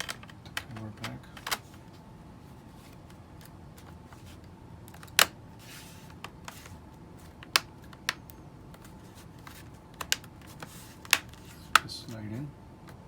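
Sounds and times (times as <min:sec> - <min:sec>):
plastic clips snapping into place: 0:04.9 - 0:05.4.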